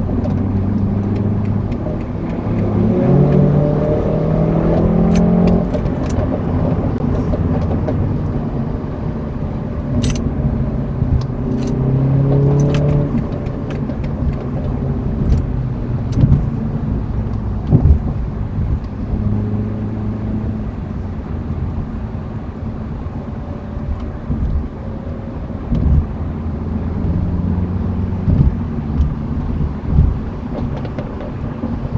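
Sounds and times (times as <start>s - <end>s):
car engine running: 0.0s - 31.9s
exhaust pops and crackles: 12.5s - 19.2s, 25.6s - 26.2s, 28.2s - 31.9s.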